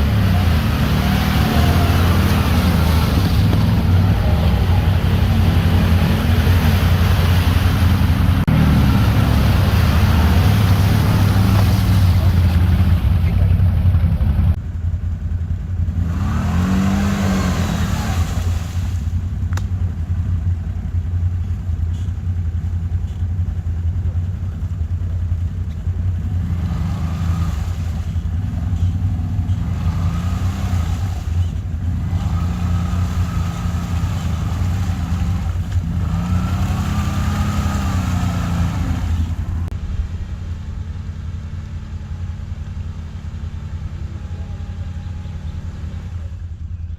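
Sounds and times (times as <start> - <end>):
quad bike engines revving: 0.0 - 14.6, 15.4 - 46.9.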